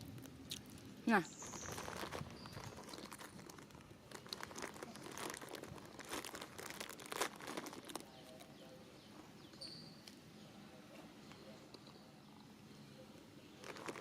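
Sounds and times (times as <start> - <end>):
crinkling and crackling: 0.0 - 8.6, 13.5 - 14.0.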